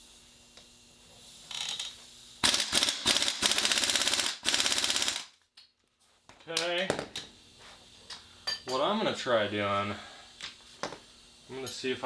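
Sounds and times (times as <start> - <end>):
impact wrench rattling: 1.5 - 5.2.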